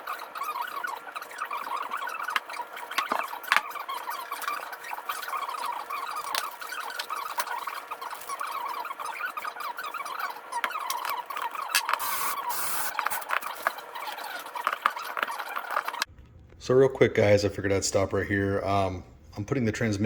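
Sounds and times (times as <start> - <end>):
high-pitched chittering: 5.1 - 16.1.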